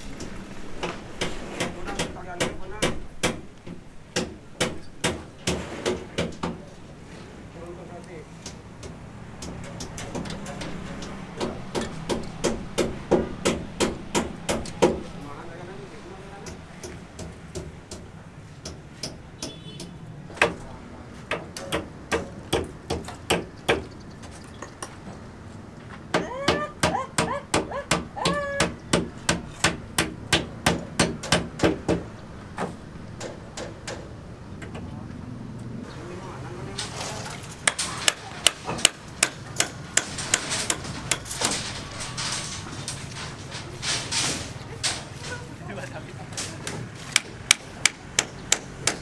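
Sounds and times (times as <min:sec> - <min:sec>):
hammer strikes: 0:00.2 - 0:06.7, 0:08.4 - 0:15.2, 0:16.4 - 0:24.0, 0:26.1 - 0:34.8, 0:36.8 - 0:45.6, 0:46.3 - 0:49.0
hammer blows: 0:36.8 - 0:45.6.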